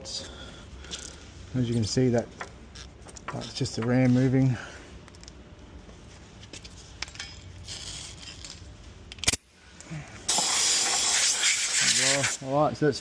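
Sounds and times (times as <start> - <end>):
metal tools clicking and clinking: 6.5 - 9.4.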